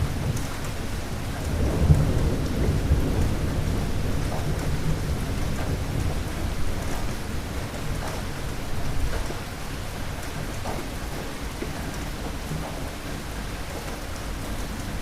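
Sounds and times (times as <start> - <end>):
low rolling thunder: 0.0 - 8.4
steady rain: 0.0 - 15.0.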